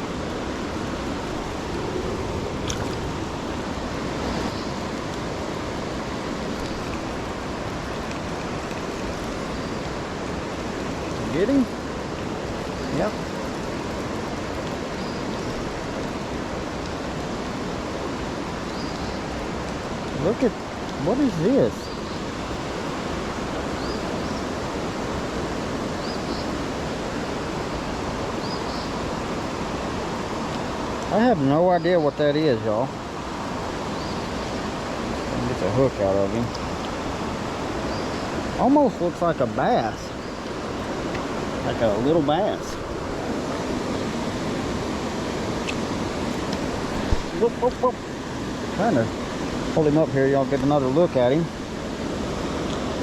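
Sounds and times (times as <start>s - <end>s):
creek water flowing: 0.0s - 53.0s
bird chirping: 4.2s - 4.8s, 18.7s - 19.4s, 21.0s - 24.6s, 25.9s - 29.0s, 33.8s - 34.6s, 37.8s - 41.0s.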